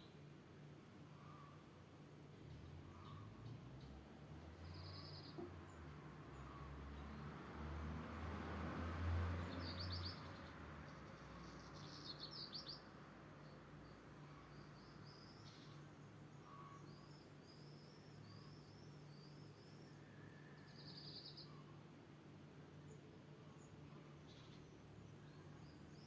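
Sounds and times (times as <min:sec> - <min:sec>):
small birds chirping: 0:04.6 - 0:07.2, 0:09.4 - 0:21.8.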